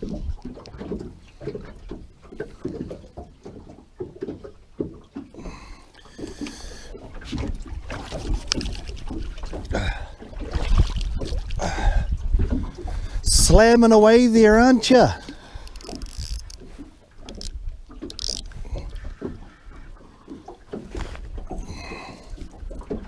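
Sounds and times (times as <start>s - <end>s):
water slapping boat hull: 0.0s - 23.0s.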